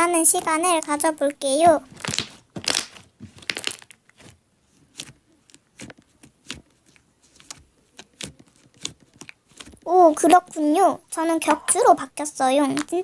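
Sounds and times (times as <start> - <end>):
slime squished by hand: 1.9 - 10.4.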